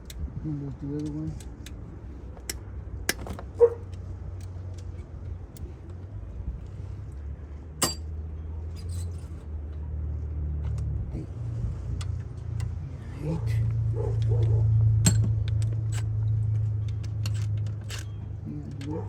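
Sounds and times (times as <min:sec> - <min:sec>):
metal tools clinking: 0:07.8 - 0:09.5, 0:14.1 - 0:19.0.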